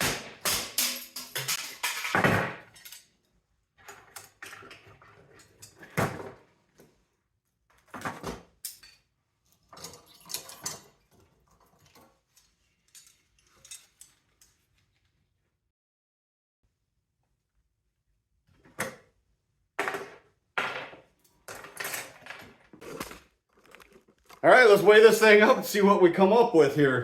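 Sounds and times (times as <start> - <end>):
metal parts clanking: 0.4 - 6.0, 9.8 - 14.6.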